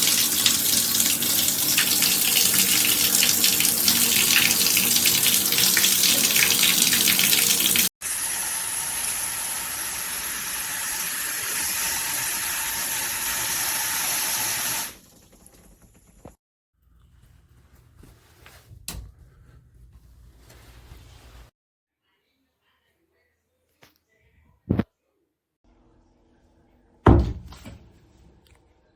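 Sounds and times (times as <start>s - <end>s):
water spraying from shower head: 0.0s - 15.0s.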